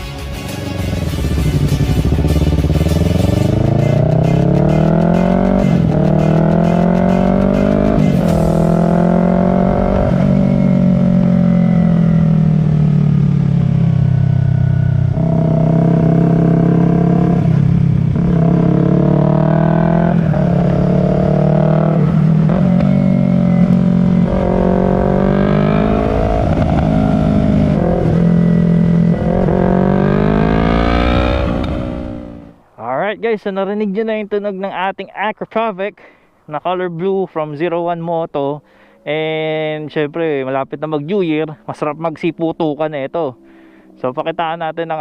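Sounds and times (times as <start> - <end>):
motorcycle engine revving: 0.8 - 32.6.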